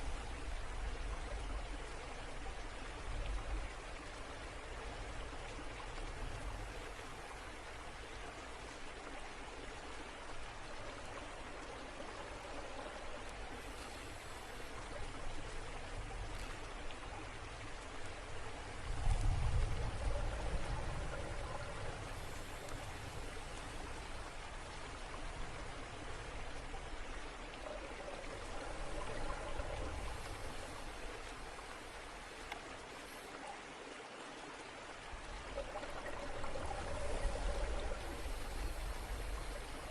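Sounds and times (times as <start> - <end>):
rushing trickling water: 0.0 - 39.9
deep low water surge: 17.5 - 32.5, 35.2 - 39.9.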